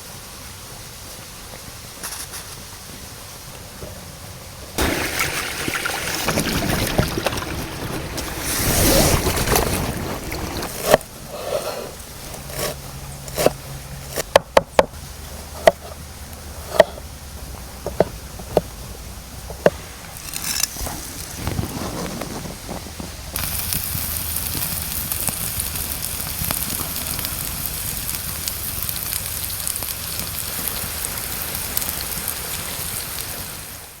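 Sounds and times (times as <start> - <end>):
rustling scrape: 2.0 - 2.7, 5.2 - 14.2, 19.6 - 23.6
steady high hiss: 17.2 - 34.0.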